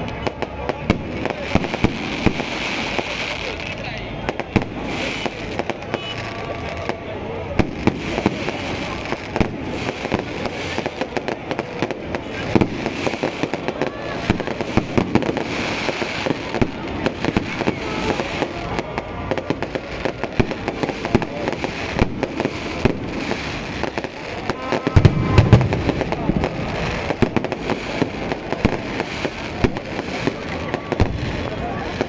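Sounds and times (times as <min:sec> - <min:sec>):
fireworks popping and crackling: 0:00.0 - 0:32.0
deep firework boom: 0:24.4 - 0:29.0.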